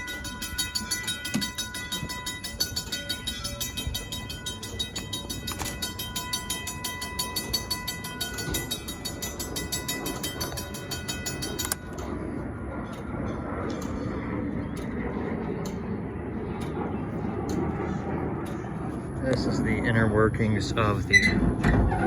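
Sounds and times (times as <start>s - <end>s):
railroad crossing signal clicking: 0.0s - 12.2s
low outdoor background noise: 0.0s - 22.0s.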